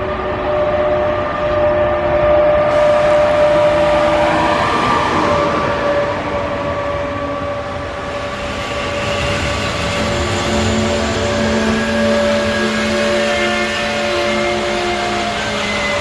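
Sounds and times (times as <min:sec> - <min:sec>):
train rumbling: 0:00.0 - 0:16.0
train whining tones: 0:00.0 - 0:16.0.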